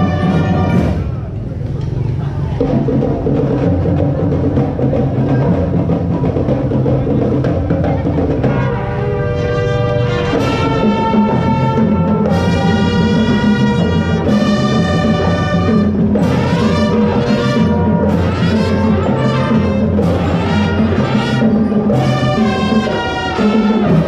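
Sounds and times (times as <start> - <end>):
brass notes: 0.0 - 1.2, 8.4 - 24.0
continuous drumming: 0.0 - 24.0.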